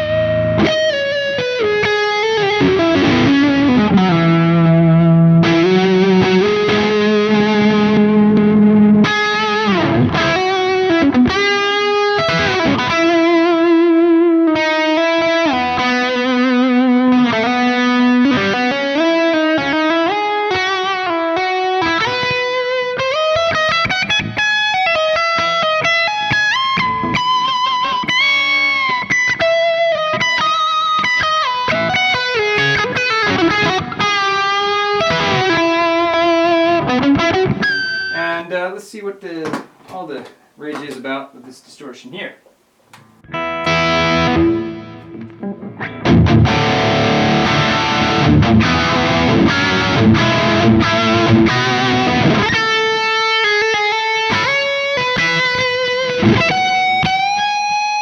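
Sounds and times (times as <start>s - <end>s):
electric guitar lead lines: 0.0s - 38.6s, 42.9s - 58.0s.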